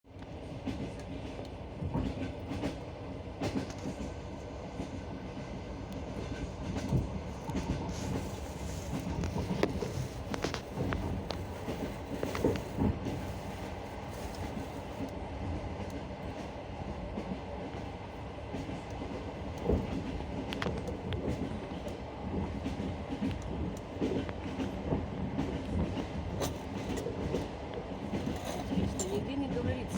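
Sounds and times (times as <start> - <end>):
train rolling rumble: 0.1 - 29.9
train wheels clacking on rail joints: 6.2 - 15.1, 18.5 - 29.9
wheels clacking on rail joints: 22.6 - 29.9.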